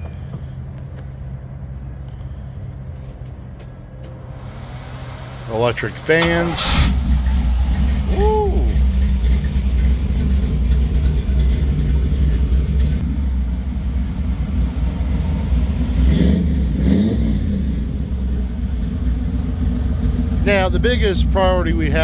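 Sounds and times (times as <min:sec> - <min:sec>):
loud car engine running: 0:04.2 - 0:22.0.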